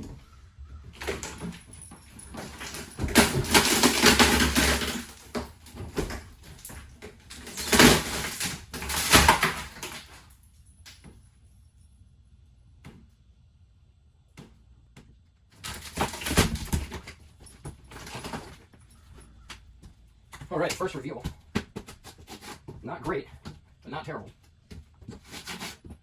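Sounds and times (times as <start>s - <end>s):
wood creaking and scraping: 0.0s - 10.3s, 15.5s - 26.0s.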